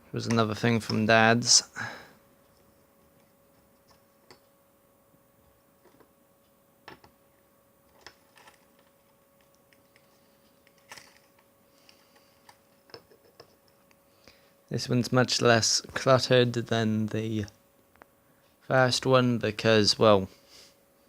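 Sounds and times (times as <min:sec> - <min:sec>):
faint electrical hum: 0:00.0 - 0:21.0.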